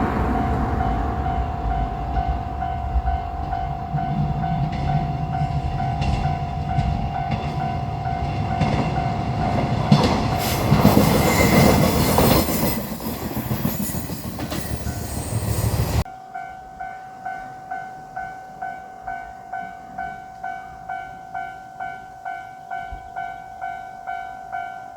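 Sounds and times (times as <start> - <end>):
wheels clattering over rail joints: 0.0 - 16.0
diesel railcar engine: 0.0 - 16.1.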